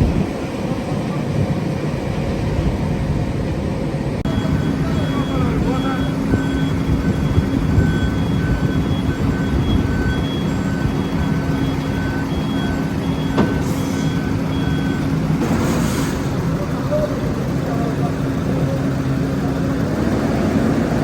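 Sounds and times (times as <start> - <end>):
diesel engine rumble: 0.0 - 21.0
back-up alarm beeping: 4.2 - 15.4.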